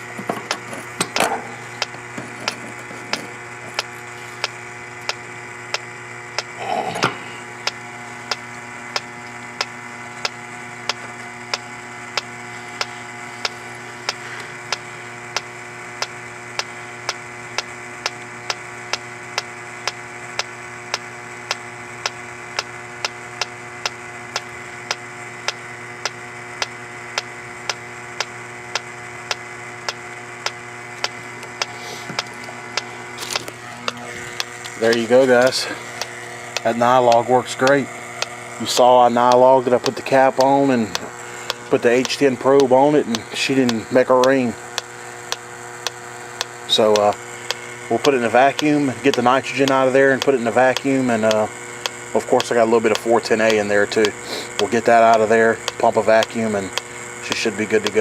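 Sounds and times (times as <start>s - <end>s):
leak detector ticking: 0.0s - 6.7s, 7.4s - 58.0s
steady hum: 0.0s - 58.0s.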